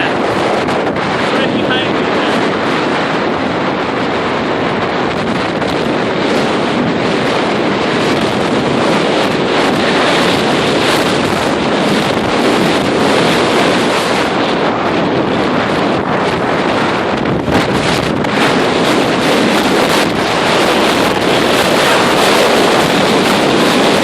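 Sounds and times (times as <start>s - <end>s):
lake waves surging: 0.0s - 24.0s
wind buffeting microphone: 0.0s - 24.0s.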